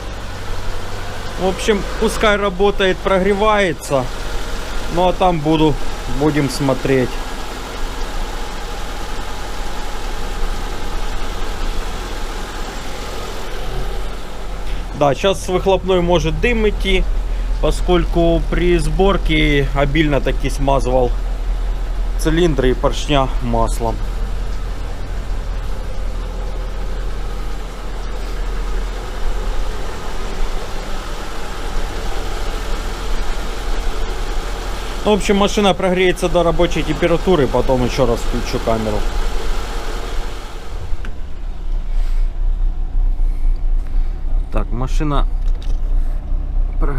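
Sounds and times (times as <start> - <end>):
car engine idling: 0.0 - 46.9.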